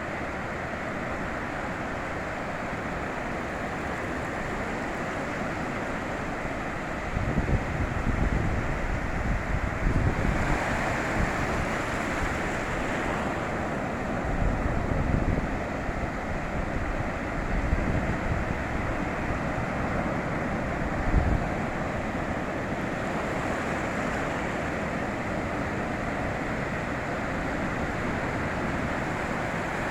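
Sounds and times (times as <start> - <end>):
ocean surf washing onto beach: 0.0 - 29.9
wind gusting on microphone: 7.0 - 12.8.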